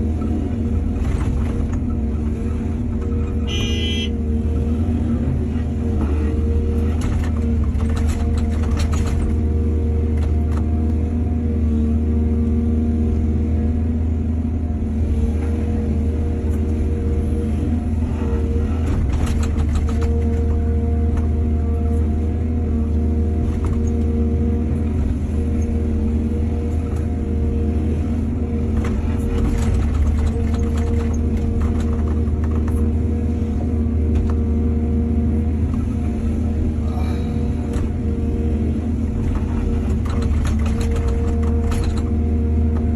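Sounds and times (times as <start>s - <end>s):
excavator diesel engine running: 0.0s - 42.9s
rattling and clattering: 7.0s - 9.4s, 28.8s - 33.0s, 39.2s - 42.2s.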